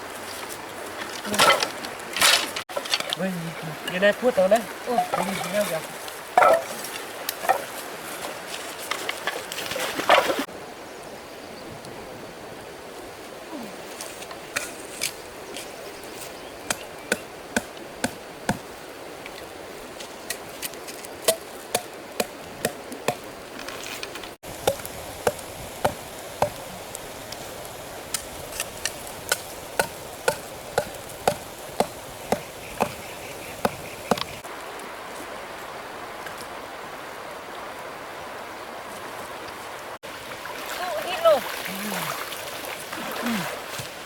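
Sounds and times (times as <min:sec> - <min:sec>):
sharp knocks: 0:29.3 - 0:33.0.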